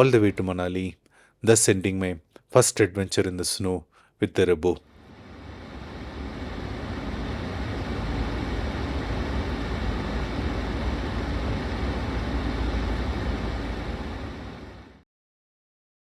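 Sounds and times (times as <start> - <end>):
car engine and road noise: 5.1 - 14.9.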